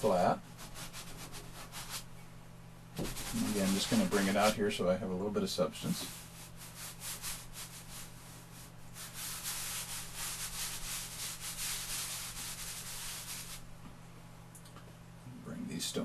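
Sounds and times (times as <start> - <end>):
chalk rubbing on paper: 0.0 - 2.1, 3.0 - 4.6, 5.9 - 13.6.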